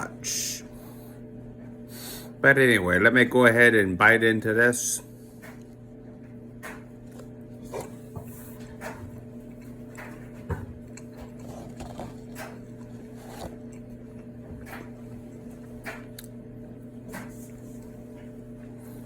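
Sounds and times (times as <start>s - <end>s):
steady electrical hum: 0.0s - 19.0s
chewing toast crunches: 8.8s - 16.4s.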